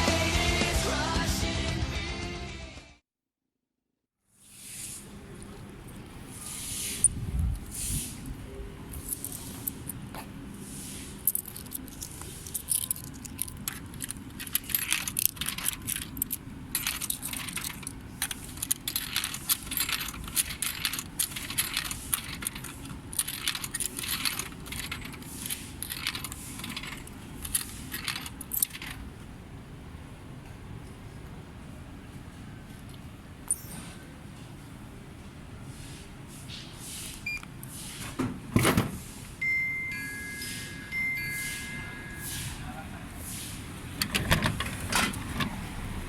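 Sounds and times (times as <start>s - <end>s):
metallic clinking and jingling: 11.2s - 29.0s.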